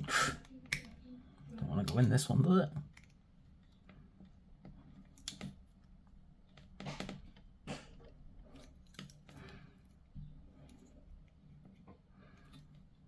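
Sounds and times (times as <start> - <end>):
small plastic parts clicking: 1.8 - 7.4.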